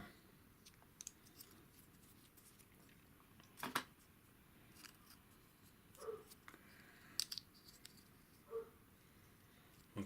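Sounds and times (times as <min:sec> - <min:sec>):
plastic pieces clicking: 0:07.1 - 0:08.1.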